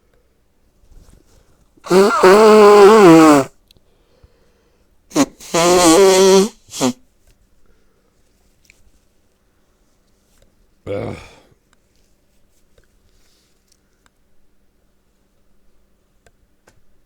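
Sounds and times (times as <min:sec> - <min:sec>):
man's drawn-out vocal noises: 0:01.9 - 0:03.5, 0:05.2 - 0:06.9, 0:10.9 - 0:11.5.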